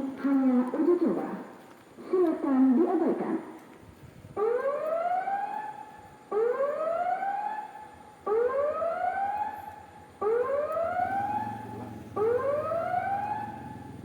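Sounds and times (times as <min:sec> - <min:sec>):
rising warning siren: 0:04.4 - 0:14.0.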